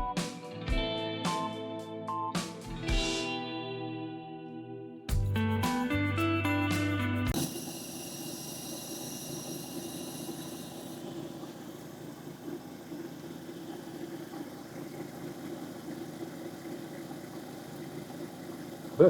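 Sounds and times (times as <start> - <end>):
grinding machine running: 7.4 - 19.0.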